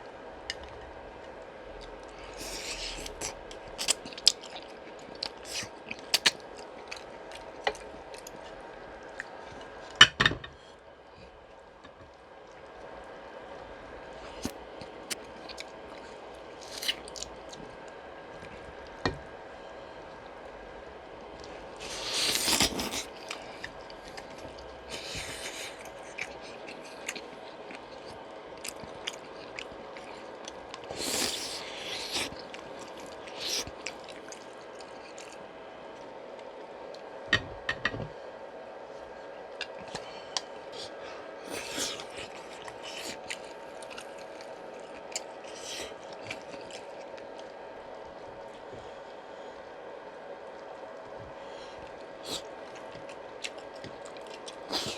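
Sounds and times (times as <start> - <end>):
faint steady hum: 0.0 - 54.9
wet chewing and biting: 2.4 - 8.4, 16.6 - 17.6, 21.9 - 35.4, 52.3 - 54.9.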